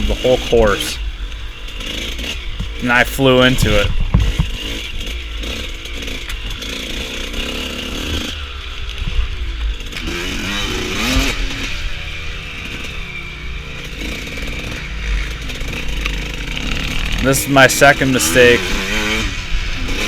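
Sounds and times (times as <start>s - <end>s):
dirt bike engine revving: 0.0s - 4.8s, 10.0s - 20.0s
steady low rumble: 16.6s - 20.0s.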